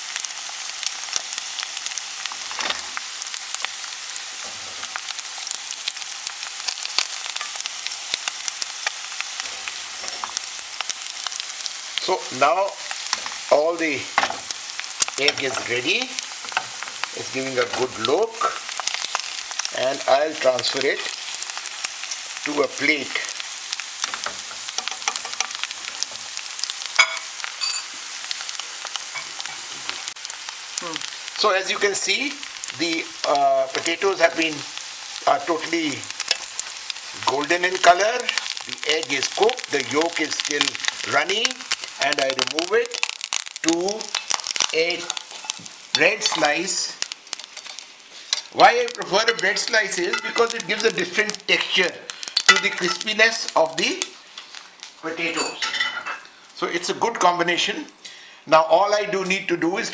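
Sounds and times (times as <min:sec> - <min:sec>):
oil sizzling in a frying pan: 0:00.0 - 0:59.9
sharp clink: 0:27.0 - 0:27.9.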